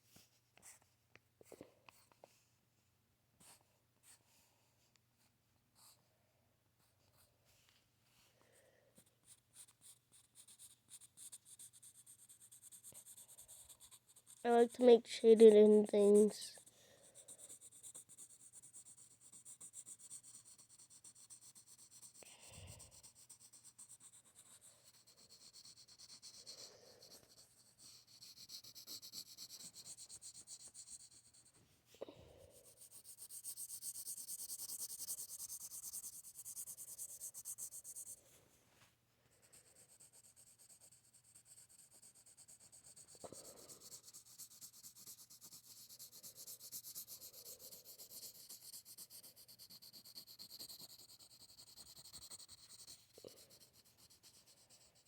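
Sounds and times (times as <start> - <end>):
pencil shading on paper: 9.0 - 31.6, 32.5 - 38.2, 39.5 - 55.0.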